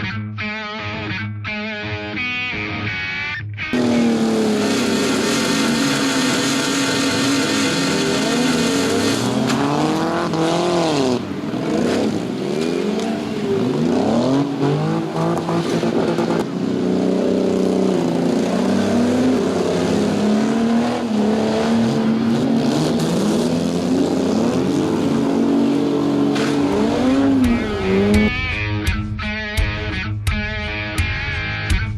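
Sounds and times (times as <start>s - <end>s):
car engines revving hard: 3.7s - 28.3s.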